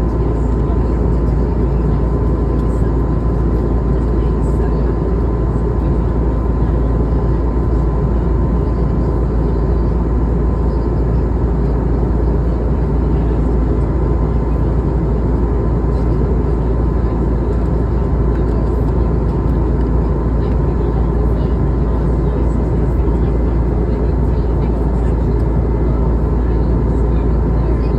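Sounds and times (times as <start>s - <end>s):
airplane cabin engine rush: 0.0s - 27.9s.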